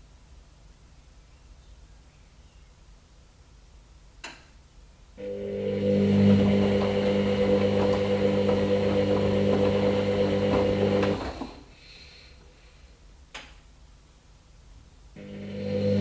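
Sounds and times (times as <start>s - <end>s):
washing machine motor hum: 5.4s - 11.8s, 15.3s - 16.0s
water sloshing: 6.0s - 11.6s.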